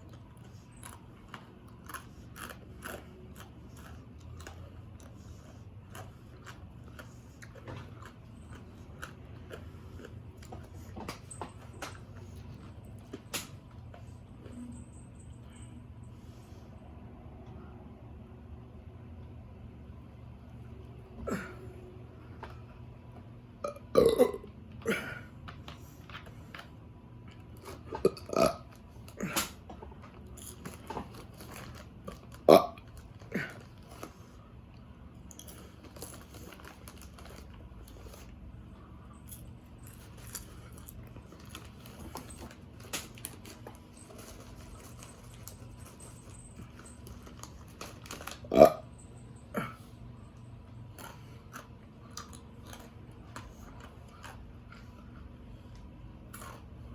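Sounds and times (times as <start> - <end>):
person burping: 23.6 - 25.3, 28.0 - 29.6, 32.5 - 33.6, 48.4 - 48.9.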